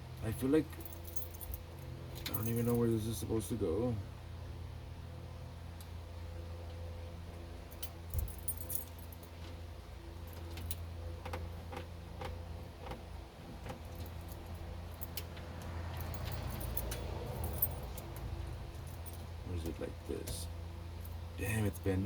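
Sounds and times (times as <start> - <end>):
steady low hum: 0.0 - 22.0
keys jangling on ring: 0.7 - 3.2, 7.7 - 9.3, 15.9 - 19.4.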